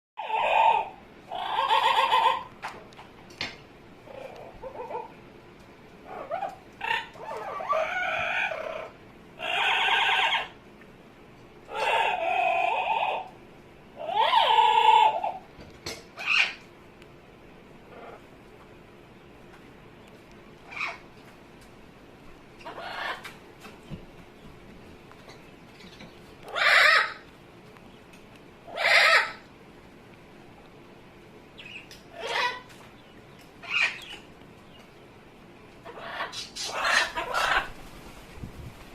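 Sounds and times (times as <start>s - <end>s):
parrot calling: 0.2s - 2.6s, 4.0s - 5.2s, 6.0s - 10.6s, 11.7s - 13.3s, 14.0s - 15.5s, 16.1s - 16.7s, 17.9s - 18.3s, 20.6s - 21.1s, 22.6s - 23.4s, 25.3s - 27.3s, 28.6s - 29.5s, 31.6s - 32.8s, 33.6s - 34.3s, 35.8s - 37.8s.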